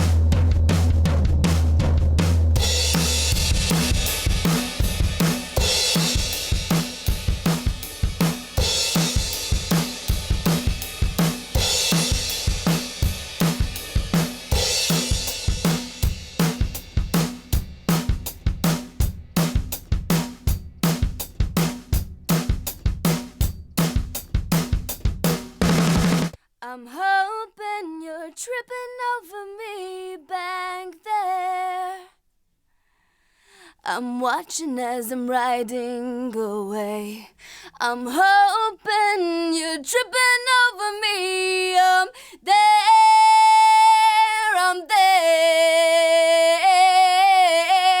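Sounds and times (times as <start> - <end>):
drum kit groove: 0.0 - 26.4.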